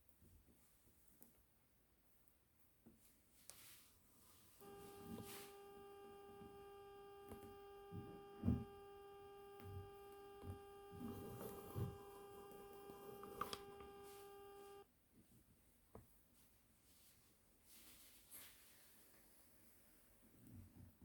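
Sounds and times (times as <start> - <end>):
electrical hum: 4.6 - 14.8.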